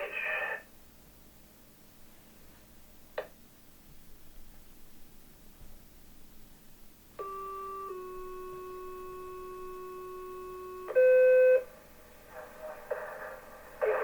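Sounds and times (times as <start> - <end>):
buzzy two-tone pager tones: 7.2 - 11.6.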